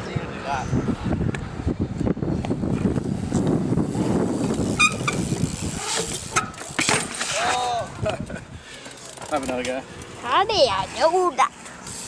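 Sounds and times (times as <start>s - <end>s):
bike tyres rumbling on concrete: 0.9s - 12.0s
high squeak: 4.8s - 6.1s.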